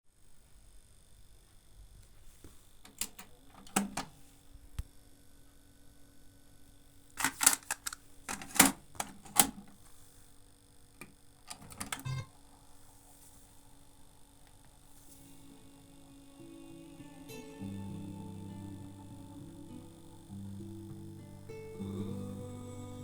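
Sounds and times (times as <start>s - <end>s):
cassette deck clicks and clunks: 2.9s - 4.2s, 7.2s - 9.8s, 11.0s - 12.2s.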